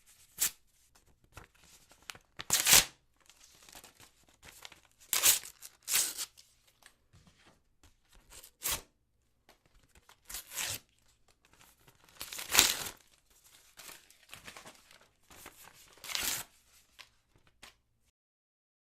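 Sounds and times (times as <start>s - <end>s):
paper tearing: 2.4s - 2.9s, 4.6s - 6.4s, 10.2s - 10.8s, 12.1s - 13.0s, 15.9s - 16.5s.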